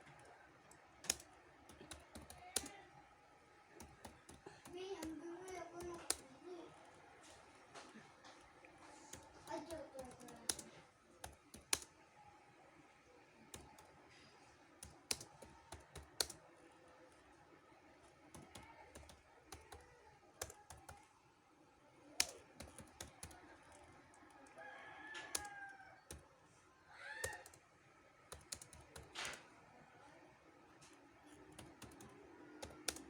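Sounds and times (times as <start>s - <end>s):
computer keyboard typing: 0.0s - 2.8s, 3.8s - 6.4s, 9.0s - 12.0s, 13.4s - 16.6s, 18.2s - 21.1s, 22.1s - 26.3s, 27.2s - 27.6s, 28.2s - 29.5s, 31.3s - 33.0s.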